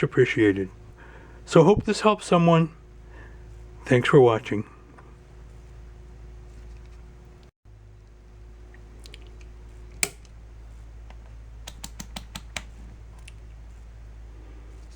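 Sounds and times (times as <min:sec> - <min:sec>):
steady low hum: 0:00.0 - 0:14.9
keys clicking: 0:11.6 - 0:12.8.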